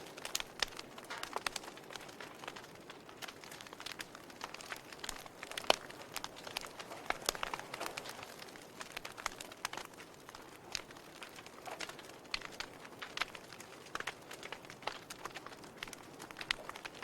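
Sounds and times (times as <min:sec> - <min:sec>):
wood fire crackling and popping: 0:00.0 - 0:17.0.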